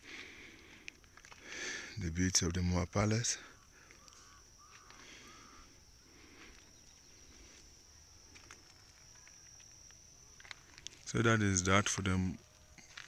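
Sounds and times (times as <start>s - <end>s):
steady high-pitched hum: 0.0s - 13.0s
faint ticks: 0.2s - 1.5s, 3.6s - 5.4s, 8.3s - 11.1s
bird chirp: 3.6s - 5.8s.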